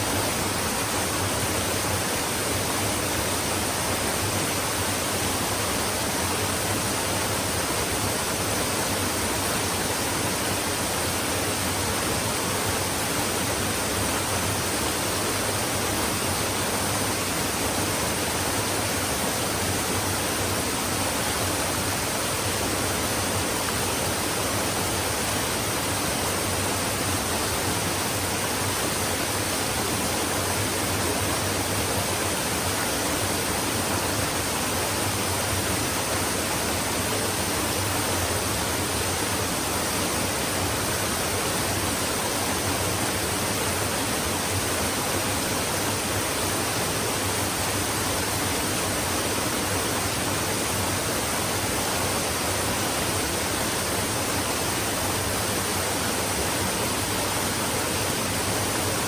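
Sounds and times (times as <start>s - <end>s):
stream flowing: 0.0s - 59.0s.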